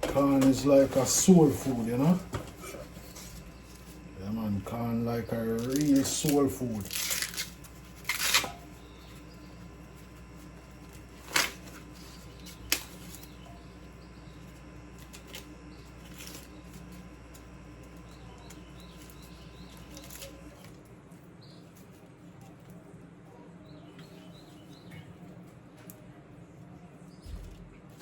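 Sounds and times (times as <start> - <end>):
low hum: 0.0 - 20.7
dry corn husks rustling: 0.2 - 22.0.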